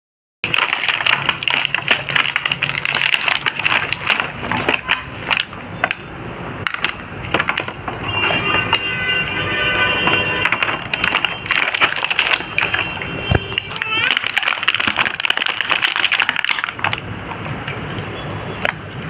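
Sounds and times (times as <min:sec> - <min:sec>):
plastic crinkling: 0:00.4 - 0:08.9, 0:10.0 - 0:17.8.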